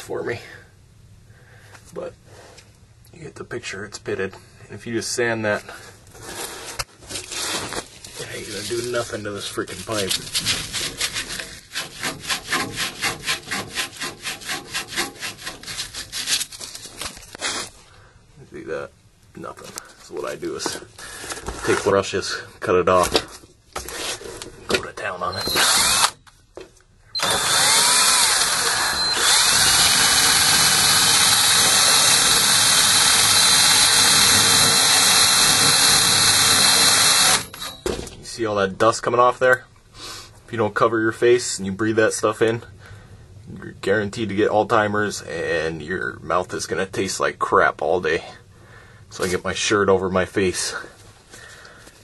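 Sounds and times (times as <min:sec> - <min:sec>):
hand sanding copper pipe: 0:06.2 - 0:16.8
power drill brushing copper pipe: 0:08.2 - 0:16.7, 0:25.4 - 0:26.2, 0:27.2 - 0:37.8.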